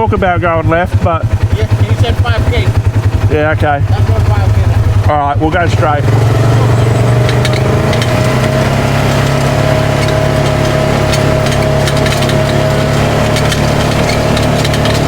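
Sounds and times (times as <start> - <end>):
engine running steadily: 0.0 - 15.0
light clicks under tyres: 6.6 - 15.0.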